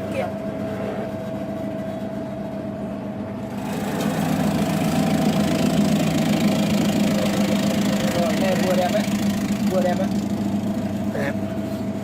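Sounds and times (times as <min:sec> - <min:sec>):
vegetable slicing machine motor hum: 0:03.4 - 0:11.3.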